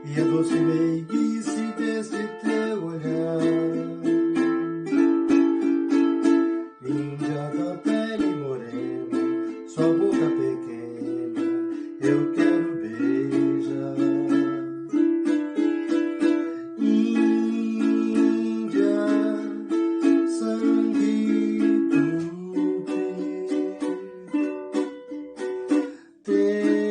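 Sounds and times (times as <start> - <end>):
ukulele chords: 0.0 - 26.9.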